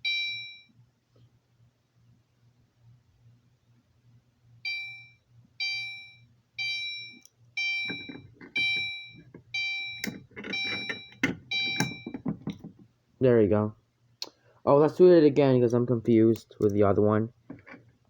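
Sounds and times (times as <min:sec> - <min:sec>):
fire alarm chime dings: 0:00.0 - 0:00.8, 0:04.6 - 0:12.2.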